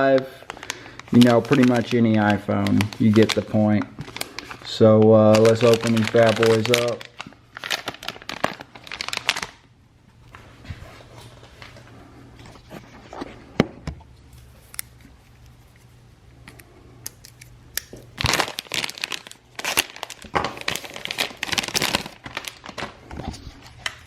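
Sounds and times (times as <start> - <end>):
plastic wrap crinkling: 0.0 - 13.3, 17.9 - 24.0
packaging clicks: 0.5 - 9.6.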